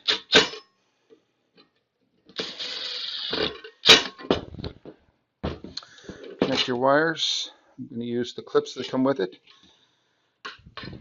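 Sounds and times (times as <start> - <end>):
ratchet-like metal scraping: 2.4 - 4.0.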